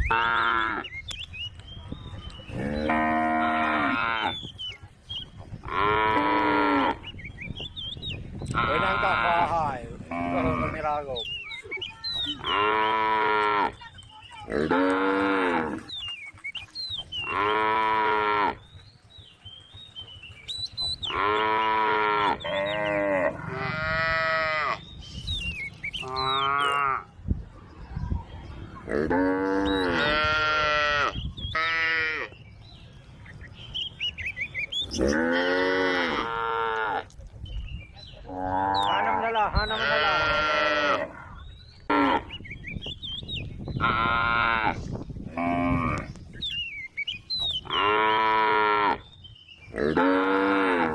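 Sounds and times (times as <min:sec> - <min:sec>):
cows mooing: 0:02.5 - 0:04.4, 0:05.6 - 0:07.0, 0:08.5 - 0:11.1, 0:12.4 - 0:13.8, 0:14.5 - 0:15.9, 0:17.2 - 0:18.6, 0:21.1 - 0:24.8, 0:26.0 - 0:27.1, 0:28.8 - 0:32.3, 0:34.9 - 0:37.1, 0:38.2 - 0:42.3, 0:43.8 - 0:46.2, 0:47.6 - 0:49.1, 0:49.7 - 0:50.9.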